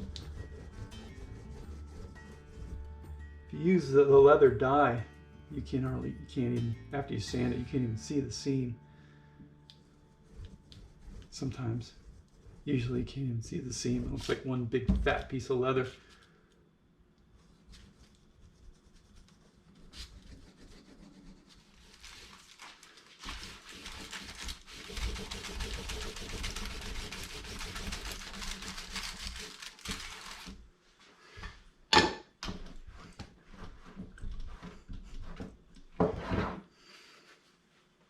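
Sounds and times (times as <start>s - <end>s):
scratchy rubbing on leather: 0.0s - 3.2s, 9.8s - 14.4s, 17.4s - 22.4s, 23.2s - 30.5s, 32.8s - 35.6s.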